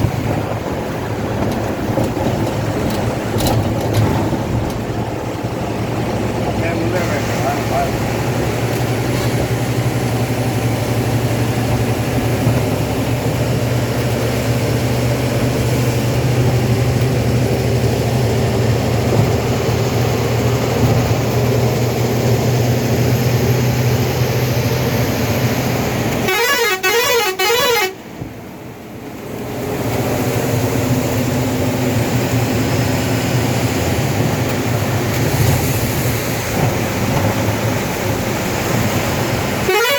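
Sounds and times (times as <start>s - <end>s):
motor vehicle running: 0.0s - 39.9s
warbling horn: 26.2s - 28.0s, 39.6s - 39.9s.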